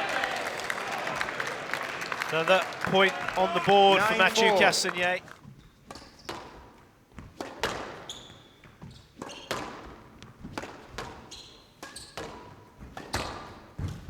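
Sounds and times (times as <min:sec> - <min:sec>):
shoes squeaking on floor: 0:11.3 - 0:12.1.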